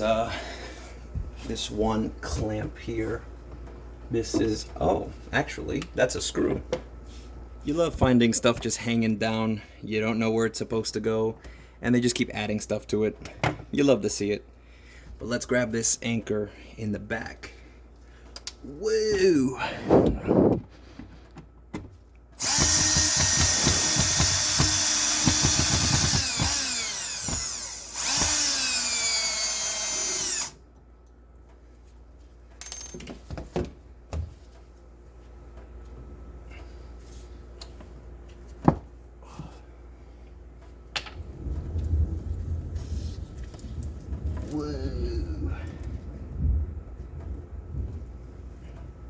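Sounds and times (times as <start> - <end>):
power drill removing screw: 22.4 - 30.6.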